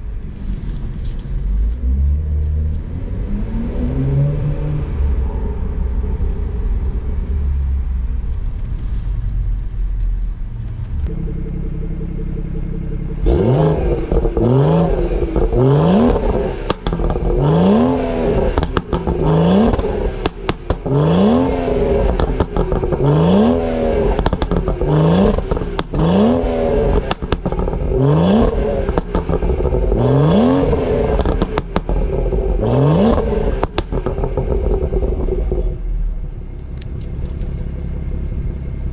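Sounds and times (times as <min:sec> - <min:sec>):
car engine revving: 0:00.0 - 0:38.9
exhaust pops and crackles: 0:13.2 - 0:35.9.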